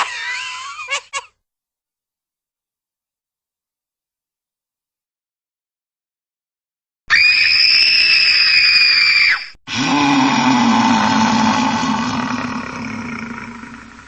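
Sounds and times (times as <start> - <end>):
high-pitched scream: 7.1 - 12.6
low groaning roar: 9.7 - 14.0.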